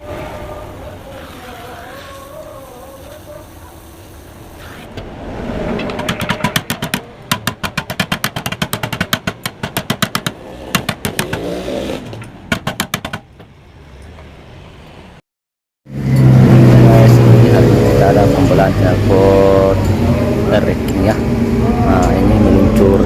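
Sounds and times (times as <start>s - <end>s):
exhaust popping: 4.6s - 13.5s, 15.9s - 23.0s
two-stroke motorcycle engine revving: 9.3s - 12.2s, 15.9s - 23.0s.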